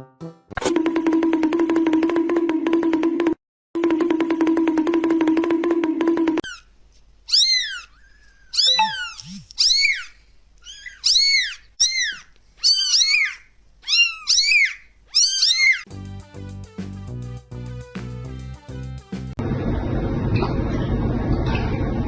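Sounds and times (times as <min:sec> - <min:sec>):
background music: 0:00.0 - 0:01.4, 0:15.9 - 0:19.4
cat meowing: 0:08.5 - 0:15.8.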